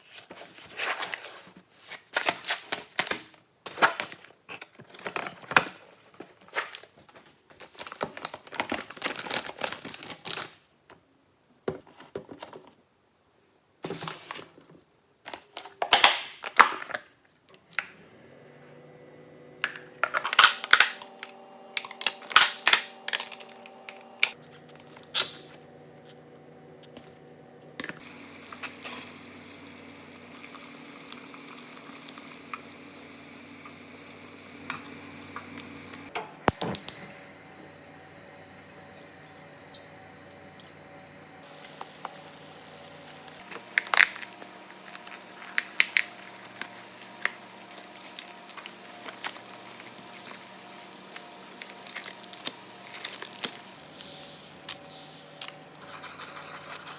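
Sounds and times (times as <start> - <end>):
kitchen appliance humming: 17.6 - 56.9
kitchen items clattering: 19.6 - 33.8.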